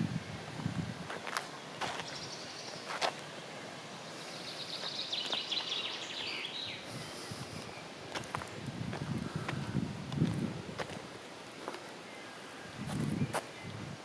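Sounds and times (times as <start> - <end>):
songbird trilling: 4.3 - 7.9.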